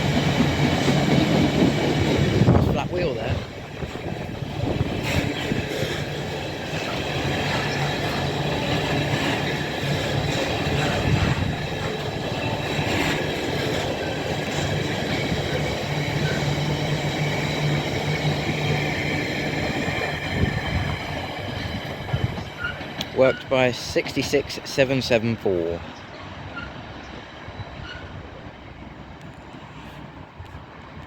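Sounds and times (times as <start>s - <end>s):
train wheels clattering over rail joints: 0.0s - 2.8s, 3.4s - 24.2s
high wheel squeal: 5.0s - 19.7s, 22.1s - 23.5s, 26.4s - 28.4s.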